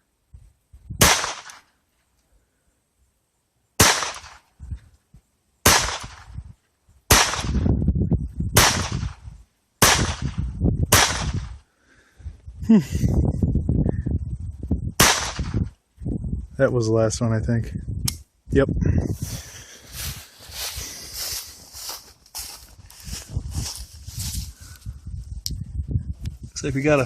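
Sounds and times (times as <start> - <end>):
pistol shots: 1.0 - 1.6, 3.8 - 4.4, 5.6 - 6.3, 7.1 - 7.6, 8.6 - 9.1, 9.8 - 11.5, 15.0 - 15.6.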